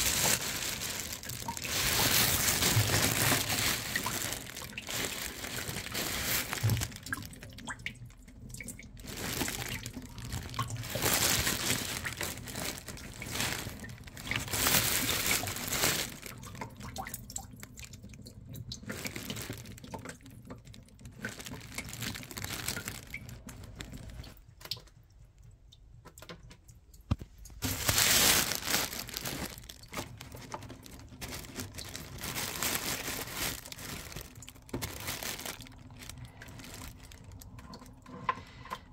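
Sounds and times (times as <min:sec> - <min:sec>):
crinkling handling noise: 0:00.0 - 0:38.9
water draining and splashing: 0:00.0 - 0:38.9.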